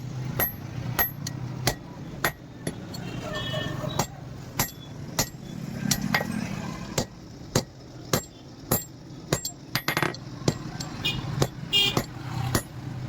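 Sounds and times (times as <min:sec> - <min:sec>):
hammer ringing on steel: 0:04.0 - 0:06.3.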